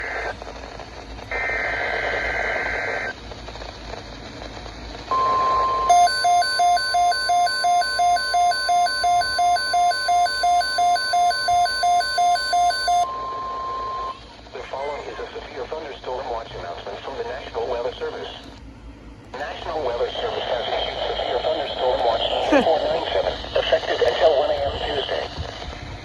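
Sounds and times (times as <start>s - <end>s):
steady weather alert tone: 5.1s - 14.1s
radio receiver alarm beeping: 5.1s - 14.2s.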